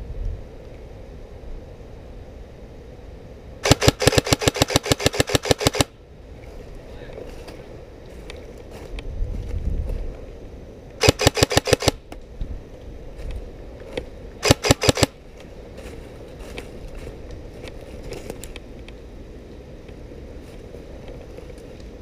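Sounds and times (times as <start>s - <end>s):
airsoft gun firing: 3.6s - 5.9s, 11.0s - 12.0s, 14.4s - 15.2s.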